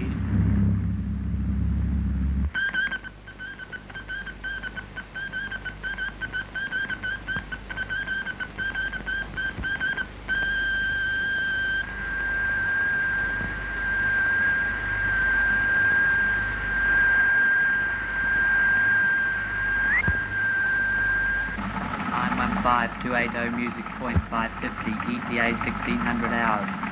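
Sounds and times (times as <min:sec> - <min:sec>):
morse code beeps: 0:04.5 - 0:11.9
steady unbroken tone: 0:12.2 - 0:26.9.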